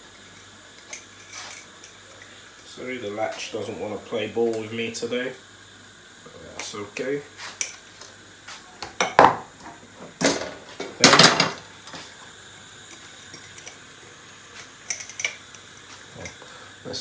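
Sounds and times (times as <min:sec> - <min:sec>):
utensils and dishes clanking: 0:00.8 - 0:02.4, 0:10.2 - 0:12.0, 0:12.9 - 0:13.8, 0:14.5 - 0:16.4.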